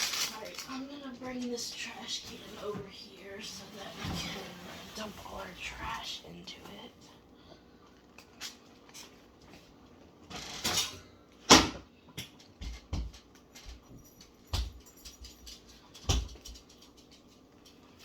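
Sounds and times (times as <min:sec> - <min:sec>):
scraping rustle: 0:00.0 - 0:06.0.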